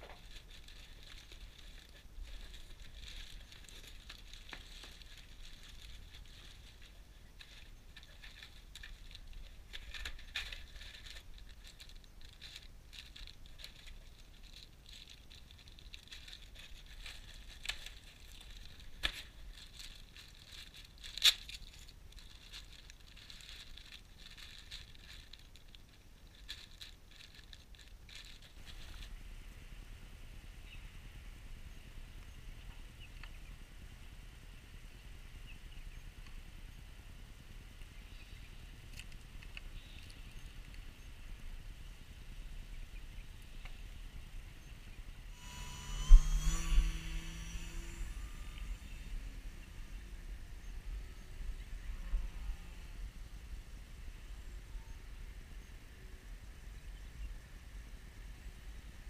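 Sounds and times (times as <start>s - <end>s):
packaging rustling and crinkling: 0.0s - 29.1s.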